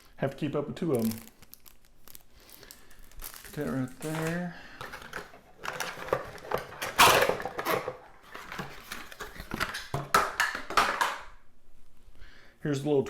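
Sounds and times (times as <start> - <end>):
packaging rustling and crinkling: 0.0 - 11.2.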